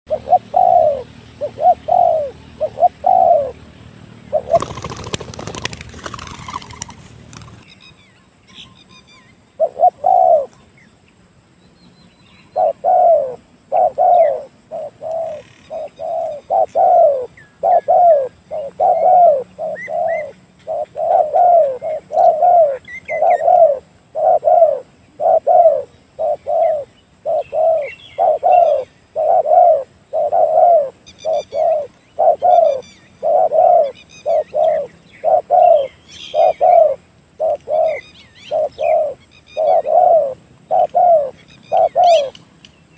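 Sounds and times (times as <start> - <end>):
dove cooing: 0.1 - 3.6, 4.3 - 7.6, 9.6 - 10.5, 12.6 - 42.4
small birds chirping: 0.1 - 42.9
rustling noise: 5.2 - 7.7.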